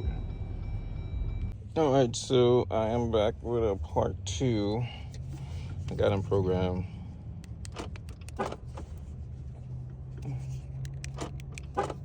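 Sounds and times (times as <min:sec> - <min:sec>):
engine idling: 0:00.0 - 0:12.0
sharp clicks: 0:07.4 - 0:08.6, 0:10.8 - 0:12.0.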